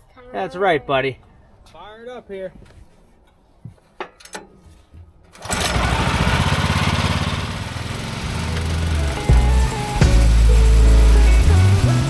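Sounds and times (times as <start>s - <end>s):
small gasoline engine running: 5.4s - 12.0s.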